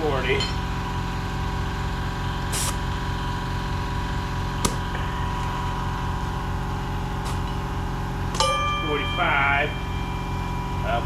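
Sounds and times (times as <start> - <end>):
air compressor running: 0.0 - 11.0
air hissing: 2.4 - 2.9, 4.6 - 7.8.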